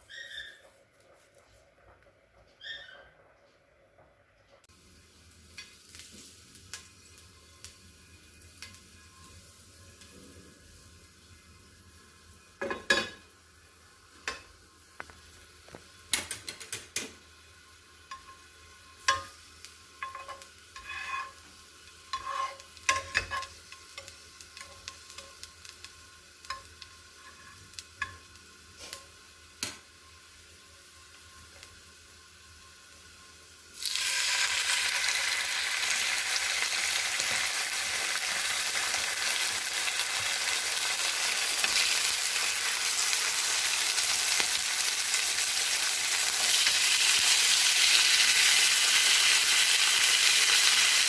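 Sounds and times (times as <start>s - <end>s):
food sizzling in a frying pan: 4.6s - 51.0s
utensil scraping a pan: 20.0s - 21.5s, 22.1s - 23.6s.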